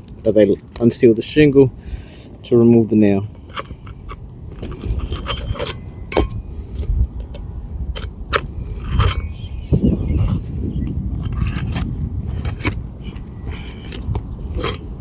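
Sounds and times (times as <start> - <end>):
scraping: 2.7 - 15.0
metal tool clicking and clinking: 3.4 - 9.5
low rumble: 3.4 - 15.0.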